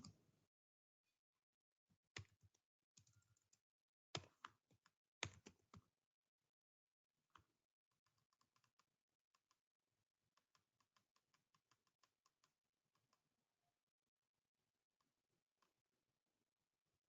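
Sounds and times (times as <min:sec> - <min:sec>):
faint keyboard typing: 0:02.2 - 0:03.6.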